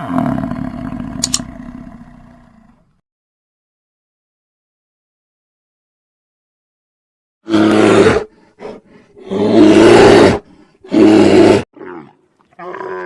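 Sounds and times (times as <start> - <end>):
large animal roaring: 0.0 - 3.0, 7.4 - 13.0.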